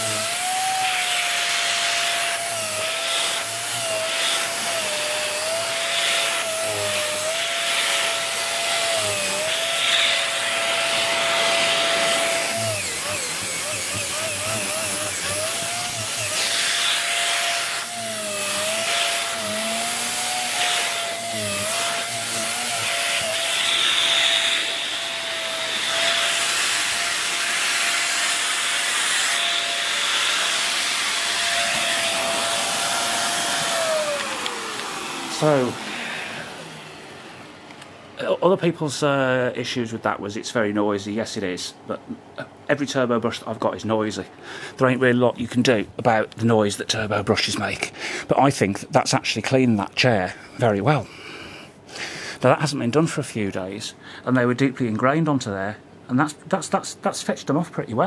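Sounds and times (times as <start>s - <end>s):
brush bar scrubbing fabric: 0.0s - 24.8s
vacuum motor whine: 0.0s - 38.2s.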